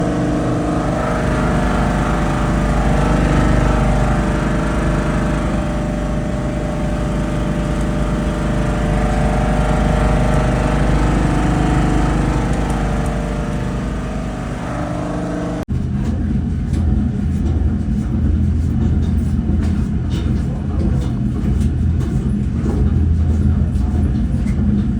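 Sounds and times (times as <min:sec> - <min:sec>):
air handler blower humming: 0:00.0 - 0:15.7
rough rumble with clicks: 0:00.0 - 0:15.7.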